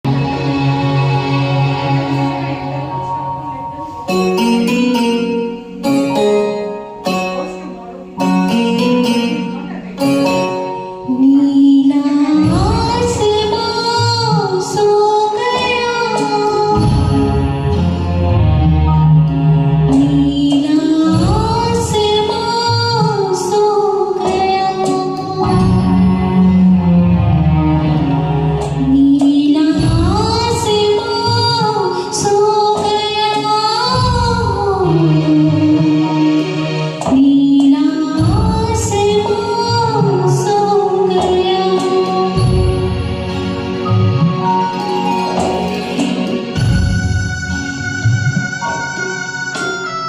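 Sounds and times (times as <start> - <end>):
instrumental backing track: 0.0 - 50.0
woman singing: 11.0 - 17.6, 19.9 - 26.8, 28.6 - 36.4, 37.0 - 43.1, 46.6 - 50.0.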